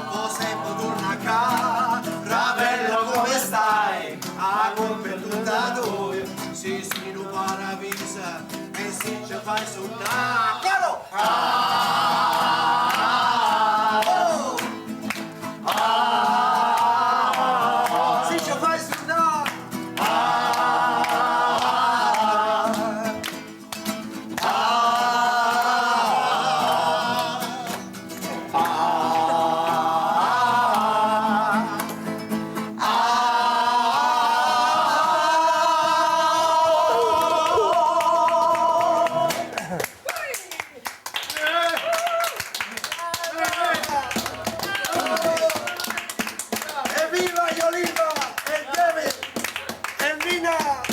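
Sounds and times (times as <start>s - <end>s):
person singing: 0.0s - 14.7s, 24.4s - 32.1s, 32.7s - 39.8s
guitar: 0.0s - 50.9s
person singing long notes: 32.8s - 39.8s.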